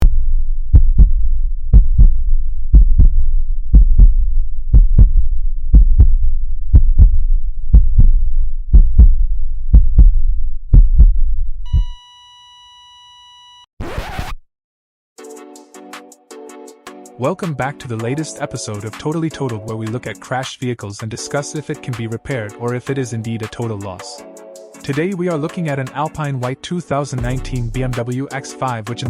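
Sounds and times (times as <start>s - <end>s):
low rumble: 0.0s - 11.6s
heartbeat lub-dub beats: 0.0s - 12.0s, 27.2s - 29.0s
flatline beep: 11.7s - 13.7s.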